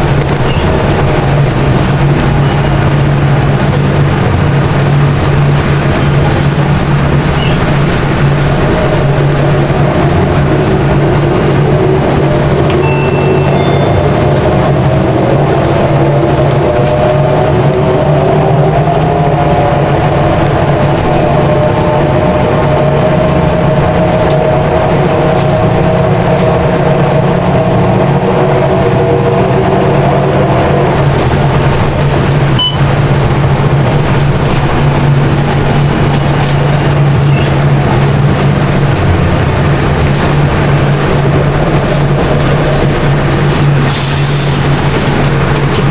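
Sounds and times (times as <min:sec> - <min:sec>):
bus engine droning: 0:00.0 - 0:45.9.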